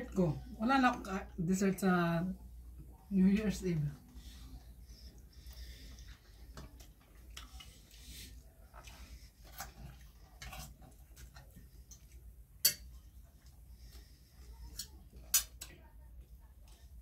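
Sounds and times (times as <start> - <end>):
cutlery clicking on plates: 12.6 - 12.9, 14.7 - 15.8.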